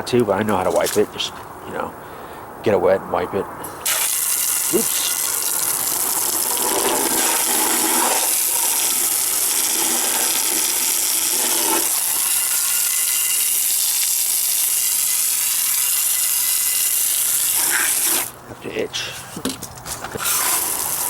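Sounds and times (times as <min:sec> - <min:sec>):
hose spraying water: 0:03.7 - 0:18.4, 0:20.2 - 0:21.0.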